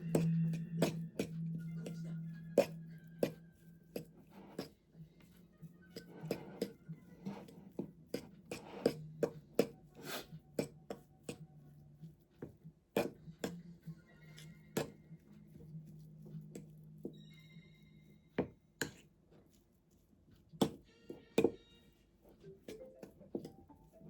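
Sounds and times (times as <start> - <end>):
low steady hum: 0.0 - 12.2
quiet background music: 0.0 - 24.0.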